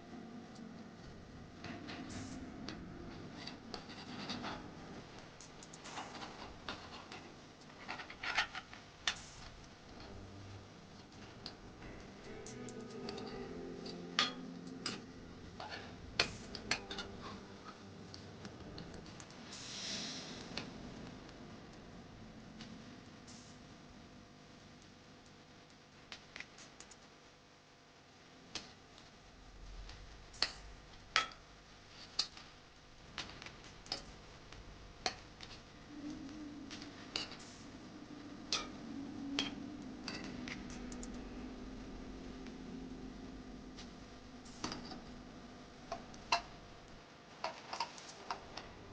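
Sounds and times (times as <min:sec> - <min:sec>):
faint low hum: 0:00.0 - 0:48.9
short hiss: 0:19.5 - 0:20.4.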